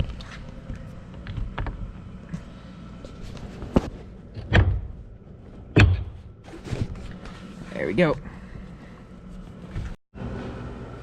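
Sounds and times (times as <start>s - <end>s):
heavy thunk: 5.7s - 6.3s.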